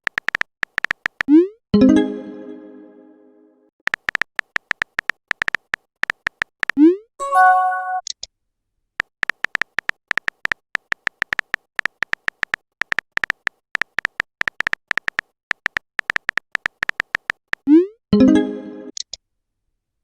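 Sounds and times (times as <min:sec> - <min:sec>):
phone keyboard typing clicks: 0:00.0 - 0:01.3, 0:03.8 - 0:06.8, 0:09.0 - 0:17.7.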